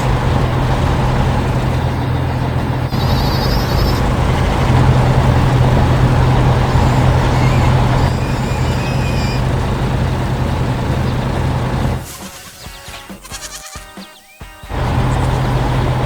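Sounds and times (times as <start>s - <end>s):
diesel machinery engine running: 0.0s - 12.2s, 14.7s - 16.0s.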